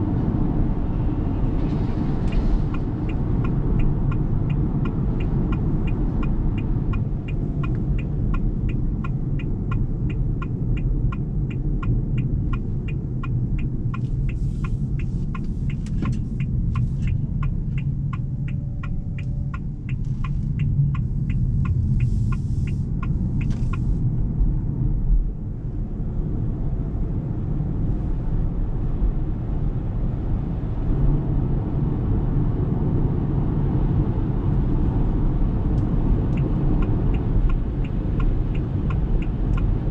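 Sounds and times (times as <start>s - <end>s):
road and tyre rumble: 0.0s - 39.9s
turn signal ticking: 2.0s - 25.4s, 33.4s - 39.9s.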